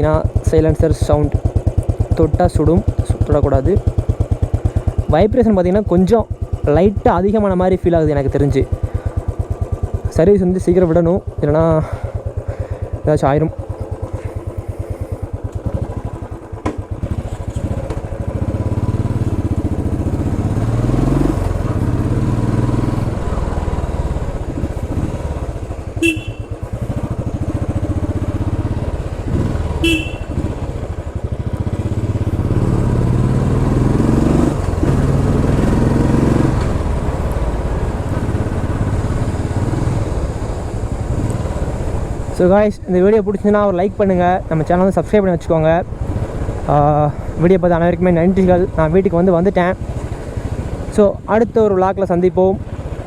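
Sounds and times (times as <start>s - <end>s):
motorcycle engine accelerating: 0.0s - 53.0s
motorcycle horn toots: 25.8s - 27.2s, 29.3s - 30.7s.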